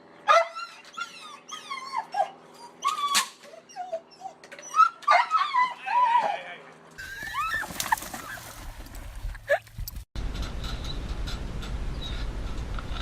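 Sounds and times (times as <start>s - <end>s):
dog whining: 0.3s - 6.4s.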